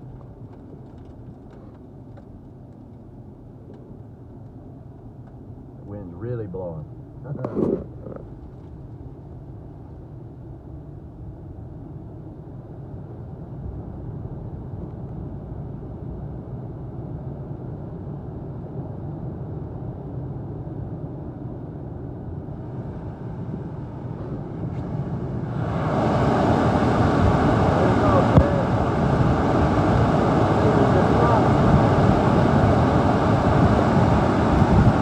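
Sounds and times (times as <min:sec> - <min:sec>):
wind blowing on microphone: 0:23.0 - 0:35.0.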